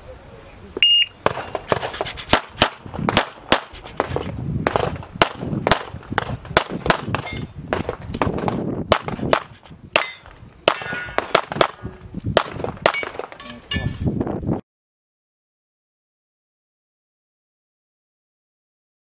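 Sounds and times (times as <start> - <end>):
pistol shots: 1.2 - 11.8
metallic ringing: 13.0 - 14.0.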